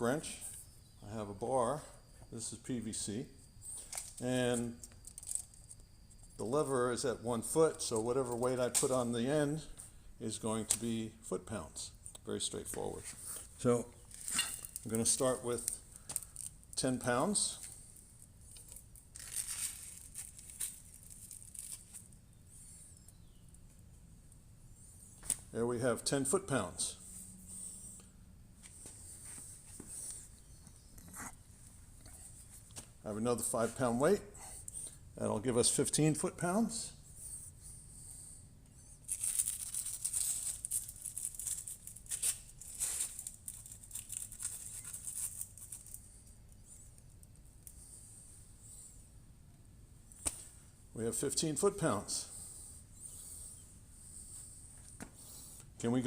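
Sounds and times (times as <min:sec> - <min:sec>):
rustling and scraping handling noise: 0:12.3 - 0:22.9, 0:25.0 - 0:34.1, 0:39.0 - 0:48.9.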